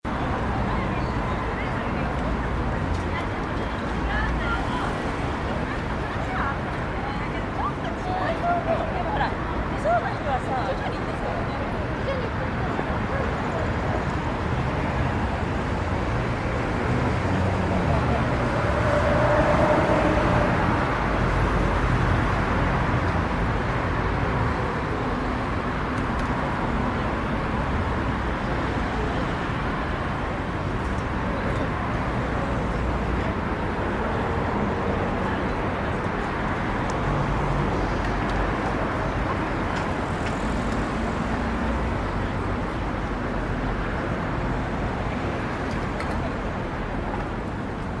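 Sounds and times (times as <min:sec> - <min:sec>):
traffic noise: 0:00.0 - 0:48.0
murmur of voices: 0:00.1 - 0:22.6.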